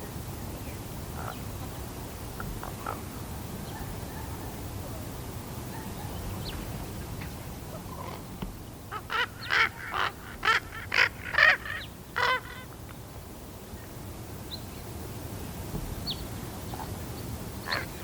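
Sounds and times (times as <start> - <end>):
young raven calling: 2.6 - 3.2, 8.9 - 12.8, 17.6 - 18.0.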